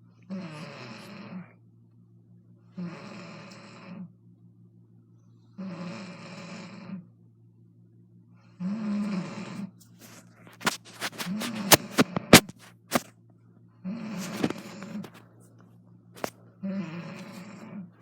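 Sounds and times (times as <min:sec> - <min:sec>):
woman snoring: 0:00.3 - 0:01.5, 0:02.8 - 0:04.0, 0:05.6 - 0:07.0, 0:08.6 - 0:09.7, 0:13.9 - 0:15.1, 0:16.2 - 0:17.8.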